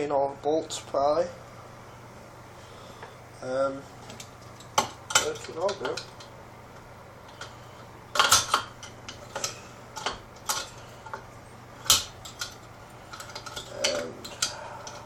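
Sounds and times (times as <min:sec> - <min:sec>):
metal parts clinking and knocking: 0:08.2 - 0:11.2, 0:11.8 - 0:15.0.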